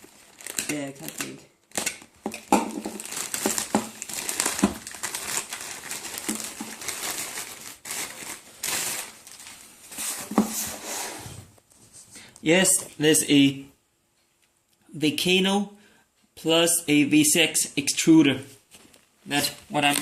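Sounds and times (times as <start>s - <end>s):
plastic bag crinkling: 0.0s - 10.4s, 18.8s - 20.0s.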